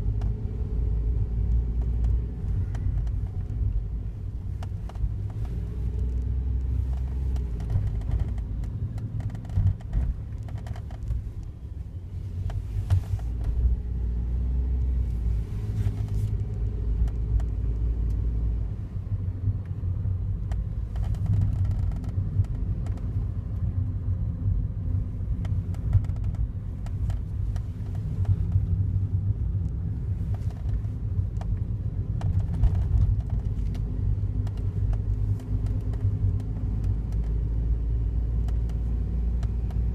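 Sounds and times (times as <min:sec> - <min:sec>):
car engine low rumble: 0:00.0 - 0:39.9.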